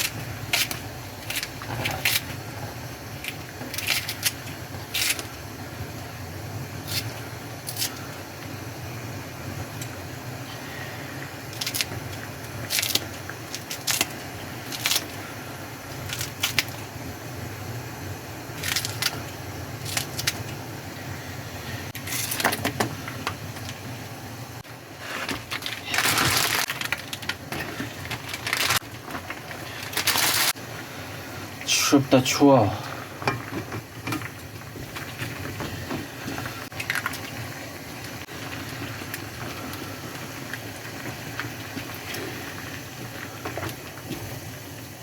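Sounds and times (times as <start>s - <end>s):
noodles being slurped: 25.0s - 30.6s.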